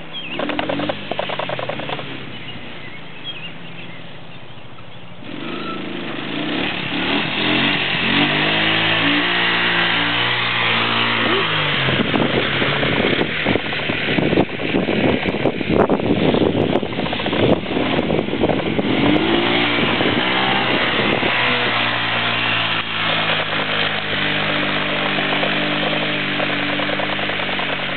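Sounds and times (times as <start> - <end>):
atv engine idling and revving: 0.0 - 27.9
knocks and rattles: 0.4 - 2.1.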